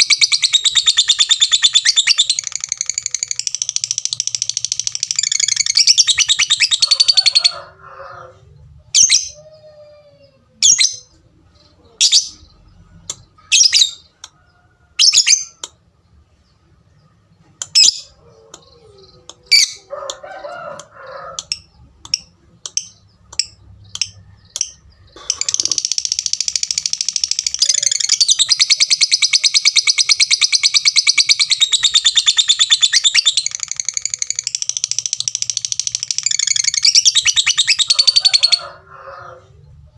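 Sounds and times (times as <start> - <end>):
lovebird chattering trill: 0.0 - 7.6, 21.4 - 38.7
lovebird tik calls: 21.3 - 38.7.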